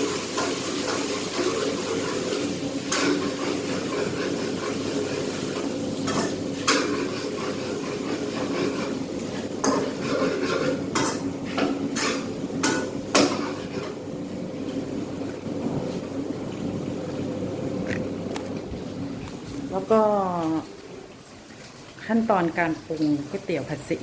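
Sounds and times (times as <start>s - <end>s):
spatula scraping a pan: 0.0s - 14.0s.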